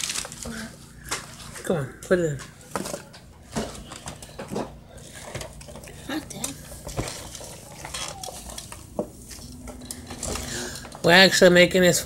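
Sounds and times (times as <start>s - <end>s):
lettuce leaves rustling: 0.0s - 11.0s.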